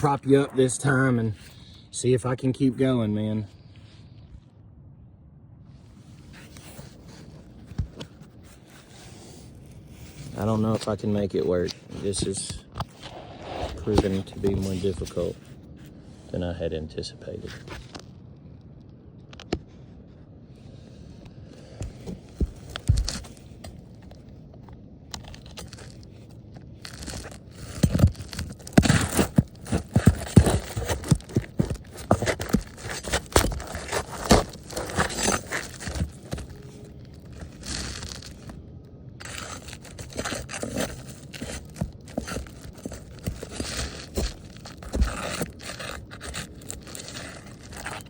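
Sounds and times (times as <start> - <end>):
roof shingle scraping and clicking: 6.2 - 15.6, 21.6 - 38.6, 39.2 - 48.0.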